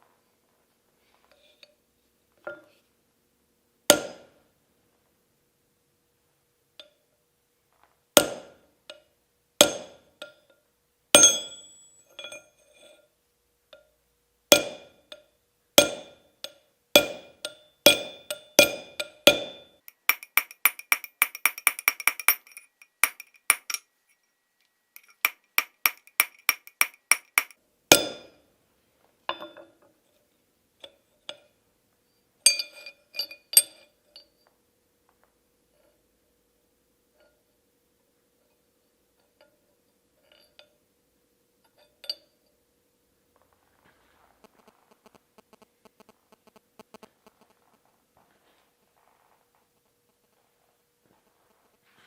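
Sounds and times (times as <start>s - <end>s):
hammer striking steel: 3.9s - 4.3s, 8.2s - 9.0s, 9.6s - 10.5s, 11.2s - 12.9s, 14.5s - 23.8s, 25.0s - 28.4s.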